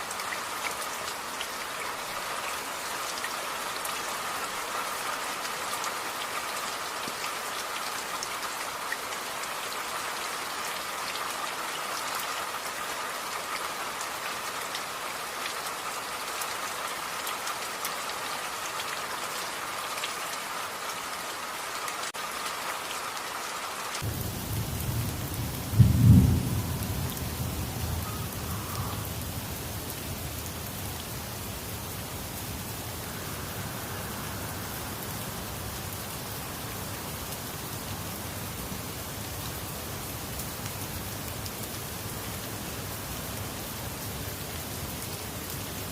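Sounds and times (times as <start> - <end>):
steady rain falling: 0.0 - 45.9
thunder clap and rumble: 24.0 - 28.5.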